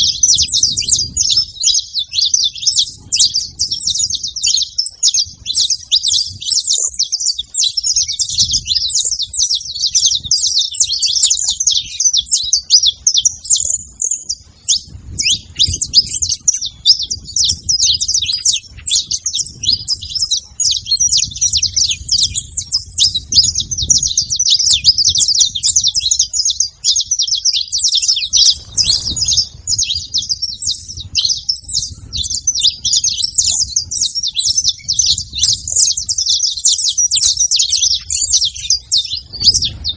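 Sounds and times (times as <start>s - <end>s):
flock of finches chirping: 0.0s - 39.9s.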